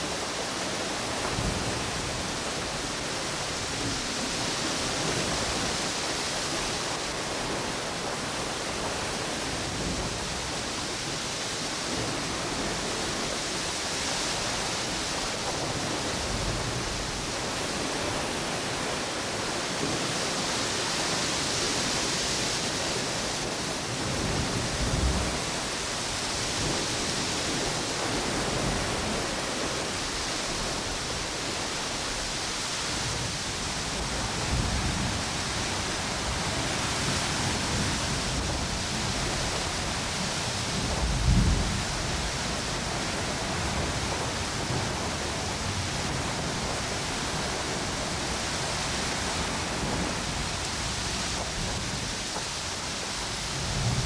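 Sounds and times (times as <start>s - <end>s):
ocean waves: 0.0s - 54.0s
wind: 0.0s - 54.0s.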